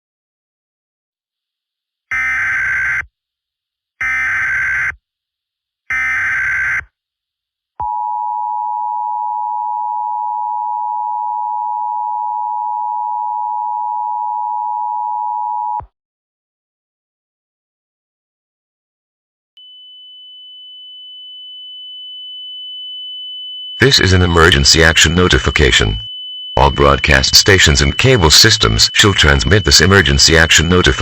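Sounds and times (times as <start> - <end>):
two-tone attention signal: 23.8 - 31.0
digital data bursts warbling: 26.6 - 31.0.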